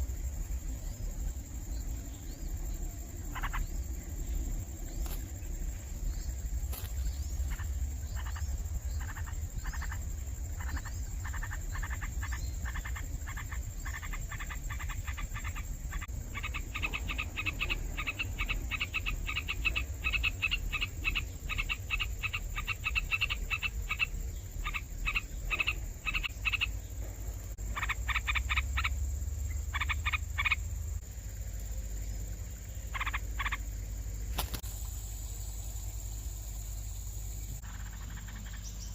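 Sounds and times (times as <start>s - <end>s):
baby birds raspy begging calls: 6.7s - 26.8s, 27.6s - 30.7s, 32.8s - 33.6s.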